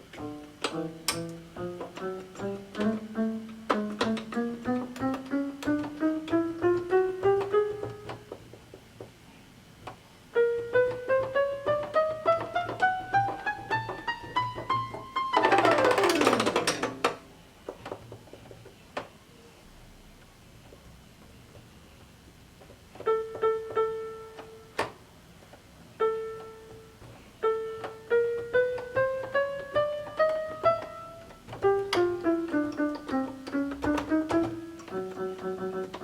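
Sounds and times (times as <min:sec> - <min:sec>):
electronic keyboard notes: 0:10.3 - 0:17.3.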